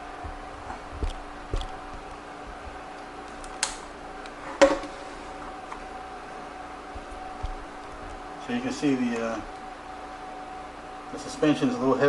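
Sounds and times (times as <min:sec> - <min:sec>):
objects being handled clicking: 0:00.0 - 0:04.4
faint hum: 0:00.0 - 0:12.0.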